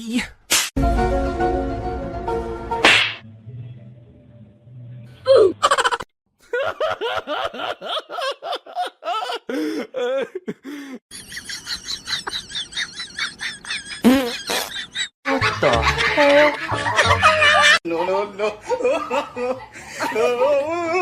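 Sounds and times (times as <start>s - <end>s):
laughter-like vocal pulses: 5.3s - 17.8s, 18.4s - 21.0s.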